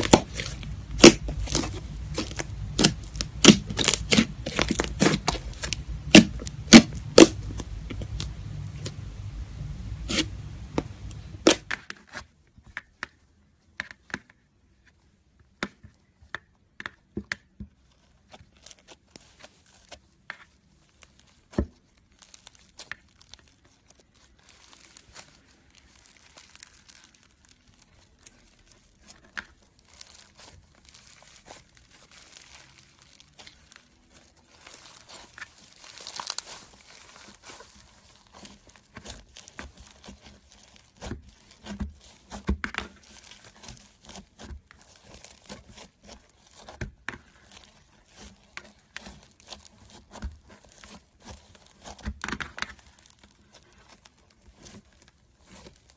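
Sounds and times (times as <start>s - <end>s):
slime crackling and popping: 0.0s - 14.3s, 15.6s - 55.9s.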